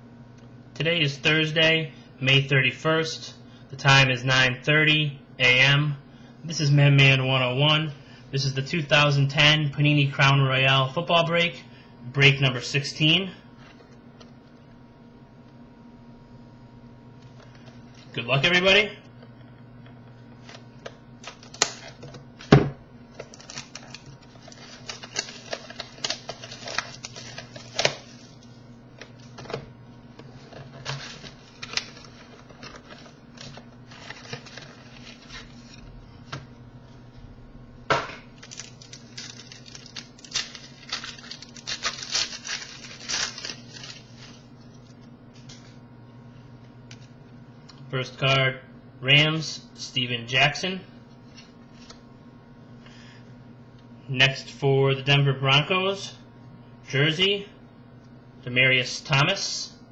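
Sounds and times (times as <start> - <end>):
faint low hum: 0.0 - 59.9
packaging crinkling and tearing: 20.4 - 29.6, 30.2 - 35.9, 38.2 - 45.7.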